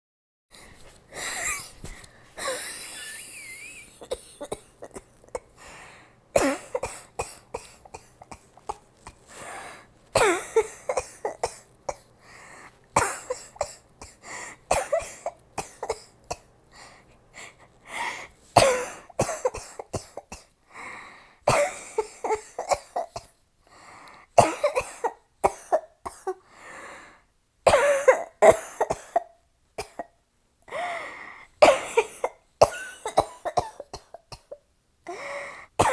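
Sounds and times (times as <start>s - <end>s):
woman coughing: 1.2s - 1.8s, 2.4s - 5.5s, 6.4s - 8.4s, 10.2s - 12.0s, 13.0s - 16.1s, 18.6s - 20.4s, 21.5s - 23.3s, 24.4s - 26.4s, 27.7s - 30.1s, 31.6s - 35.2s.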